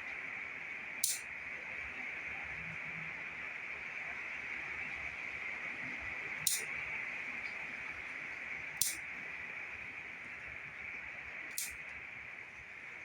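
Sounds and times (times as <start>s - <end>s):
steady high hiss: 0.1s - 2.4s, 3.3s - 13.0s
shears snipping shoots: 11.5s - 11.8s.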